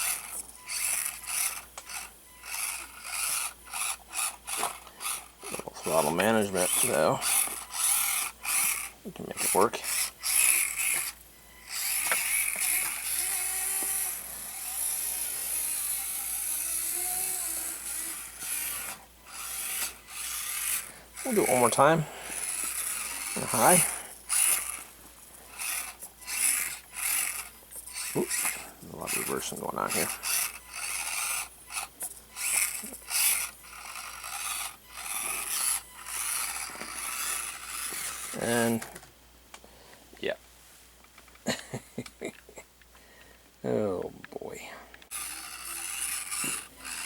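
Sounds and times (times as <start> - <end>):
toy crawler drivetrain scraping: 0.0 - 39.1, 45.0 - 47.0
small electric motor whining: 0.0 - 39.2, 43.2 - 47.0.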